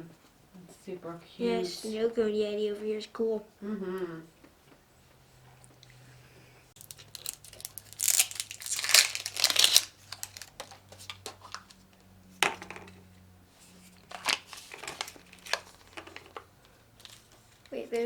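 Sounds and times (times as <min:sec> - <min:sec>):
packaging crinkling and tearing: 0:06.8 - 0:11.8, 0:14.1 - 0:16.4.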